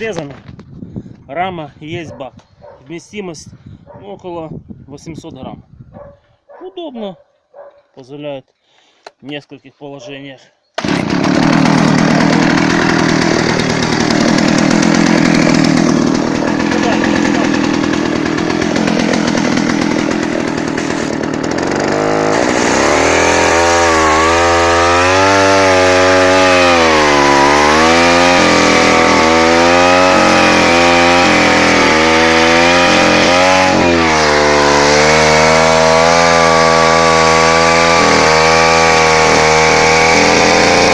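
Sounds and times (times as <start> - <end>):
chainsaw engine revving: 10.8 - 40.9.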